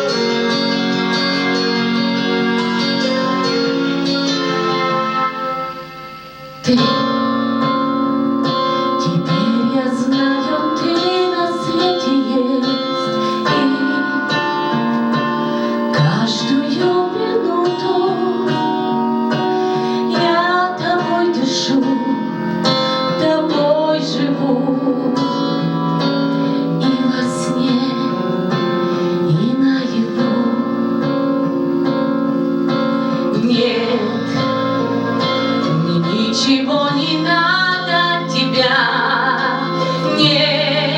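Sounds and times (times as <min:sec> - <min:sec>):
guitar accompaniment: 0:00.0 - 0:40.9
woman singing with vibrato: 0:06.6 - 0:08.0, 0:08.9 - 0:32.1, 0:33.1 - 0:40.9.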